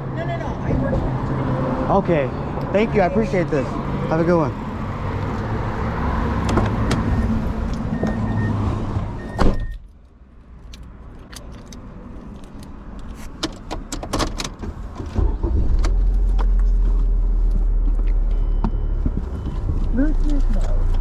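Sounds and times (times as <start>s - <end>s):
car door shutting: 9.2s - 9.8s
short beeps: 18.3s - 19.7s.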